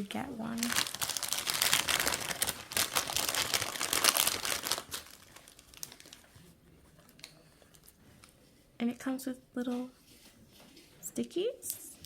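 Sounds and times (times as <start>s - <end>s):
packaging crinkling: 0.5s - 6.4s.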